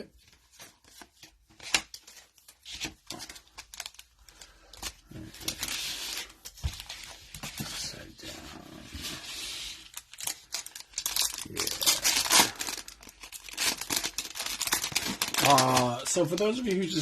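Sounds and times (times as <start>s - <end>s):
foil wrapper crinkling and tearing: 0.6s - 6.5s, 9.8s - 17.0s.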